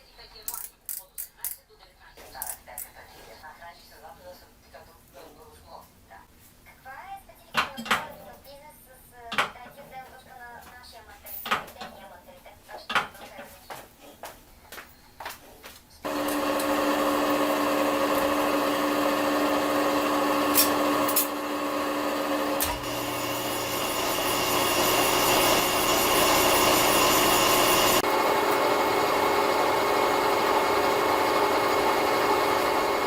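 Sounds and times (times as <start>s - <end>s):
machine tool grinding with whine: 16.1s - 33.0s.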